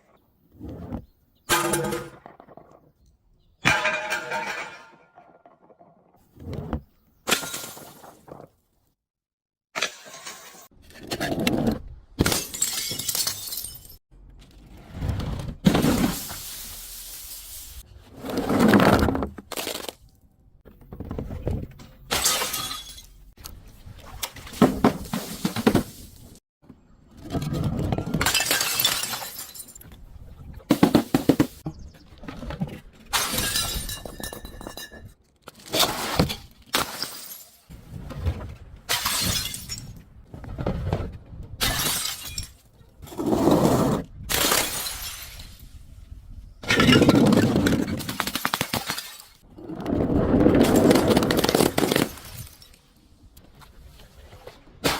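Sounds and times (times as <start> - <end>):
glass bottles shattering: 3.6 - 5.1, 7.3 - 8.2, 12.2 - 14.0, 15.8 - 17.7, 22.1 - 23.2, 28.2 - 29.8, 33.1 - 37.7, 38.9 - 40.0, 41.6 - 42.7, 44.3 - 45.7, 46.7 - 49.4, 50.6 - 52.8.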